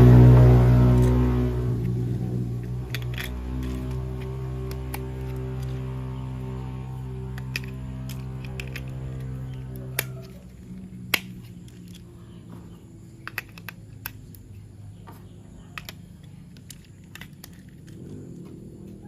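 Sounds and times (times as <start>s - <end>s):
plastic toy parts clicking: 2.6s - 6.0s, 7.0s - 14.7s, 15.6s - 18.2s.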